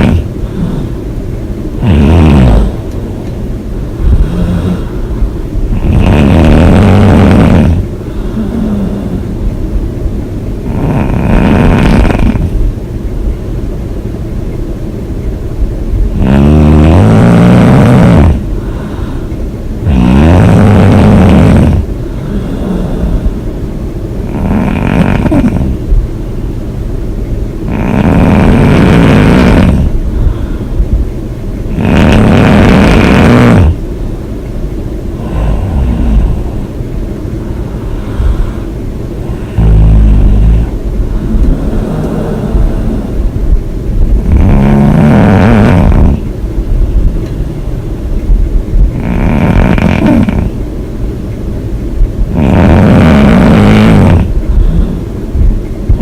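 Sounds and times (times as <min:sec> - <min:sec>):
woman snoring loudly: 0:00.0 - 0:01.0, 0:01.8 - 0:02.8, 0:04.1 - 0:05.0, 0:05.7 - 0:09.4, 0:10.6 - 0:12.5, 0:16.2 - 0:18.5, 0:19.8 - 0:23.4, 0:24.2 - 0:25.8, 0:27.7 - 0:30.4, 0:31.7 - 0:33.8, 0:35.2 - 0:36.6, 0:39.2 - 0:43.3, 0:44.2 - 0:46.3, 0:48.9 - 0:50.6, 0:52.3 - 0:55.1
quiet breathing: 0:00.0 - 0:01.4, 0:02.6 - 0:06.4, 0:07.3 - 0:09.8, 0:18.3 - 0:20.1, 0:21.5 - 0:24.4, 0:28.4 - 0:31.2, 0:35.1 - 0:44.6, 0:54.1 - 0:56.0.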